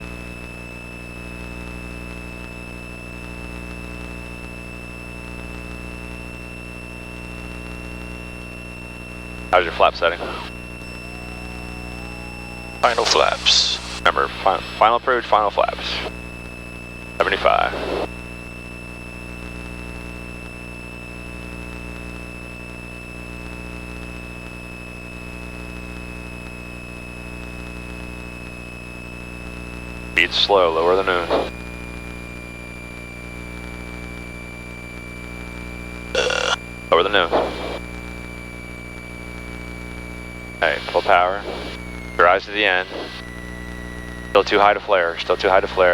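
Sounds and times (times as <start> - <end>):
thin high whine: 9.4 - 18.1, 30.2 - 31.5, 36.2 - 37.9, 39.3 - 45.9
high-pitched whine: 9.5 - 16.2, 36.2 - 37.8
airplane engine and propeller drone: 9.6 - 15.8.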